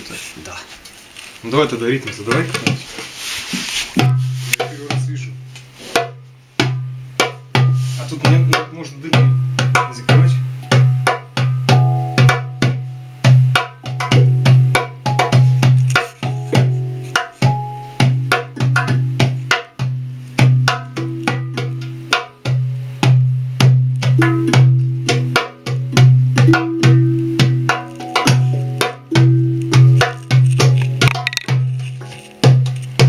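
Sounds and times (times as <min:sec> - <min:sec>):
deep low handpan note: 0:10.6 - 0:19.0, 0:20.6 - 0:22.2, 0:24.2 - 0:31.7
handpan notes ringing: 0:10.6 - 0:19.2, 0:20.6 - 0:22.5, 0:24.2 - 0:32.4.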